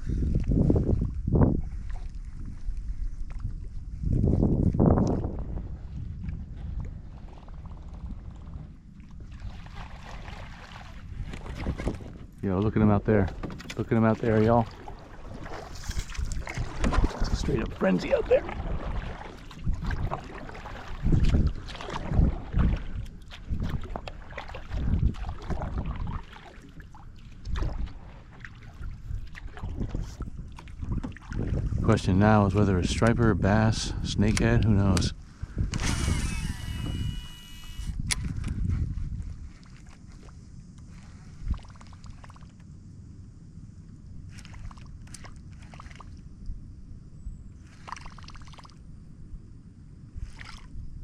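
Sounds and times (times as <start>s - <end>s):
water lapping and splashing: 0.0s - 33.1s, 37.8s - 43.2s, 44.0s - 46.7s, 47.6s - 49.1s, 50.0s - 51.0s
wind gusting against microphone: 0.0s - 41.8s
quick clicks and splashes: 13.3s - 26.6s, 41.4s - 42.7s, 44.3s - 46.2s, 47.6s - 48.8s, 50.2s - 50.8s.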